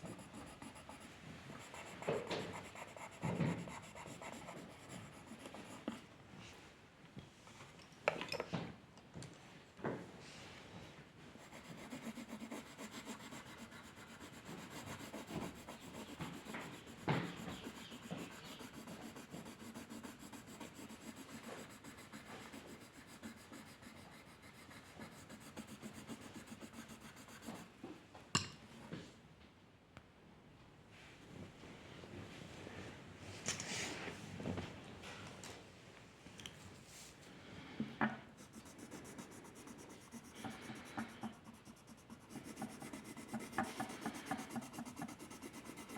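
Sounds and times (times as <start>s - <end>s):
pencil shading on paper: 0.0s - 6.0s, 11.4s - 27.7s, 38.4s - 45.9s.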